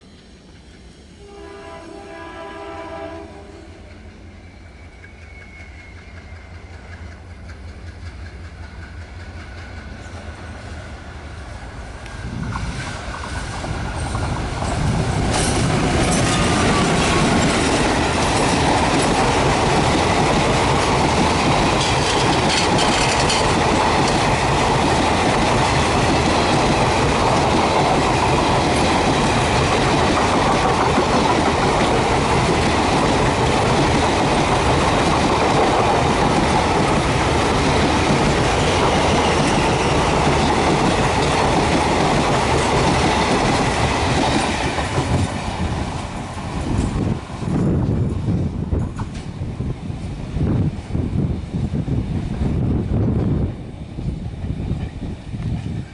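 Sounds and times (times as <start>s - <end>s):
diesel locomotive engine rumble: 0.0s - 55.9s
train horn blast: 1.2s - 4.4s
train wheels clacking over rail joints: 4.8s - 10.7s, 12.5s - 49.4s.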